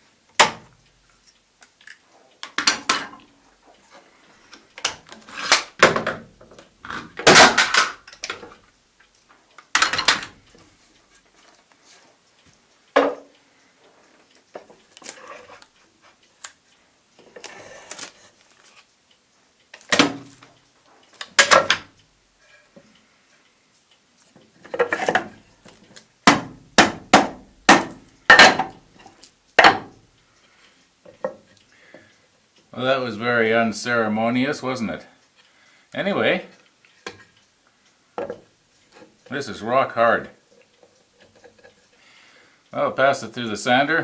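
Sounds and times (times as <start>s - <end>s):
wood and metal pieces knocking: 2.5s - 3.2s, 5.4s - 8.6s, 9.8s - 10.4s, 21.4s - 21.9s, 26.3s - 28.8s, 29.6s - 29.9s.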